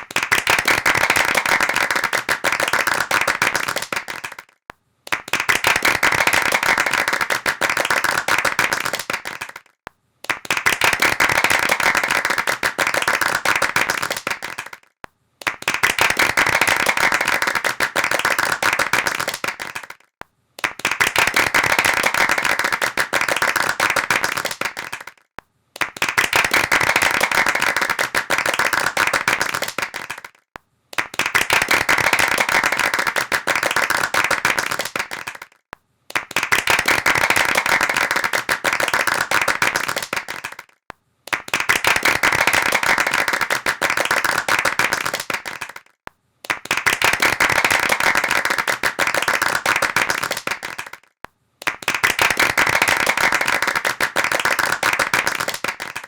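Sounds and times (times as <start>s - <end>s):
hand clapping applause: 0.0s - 56.0s.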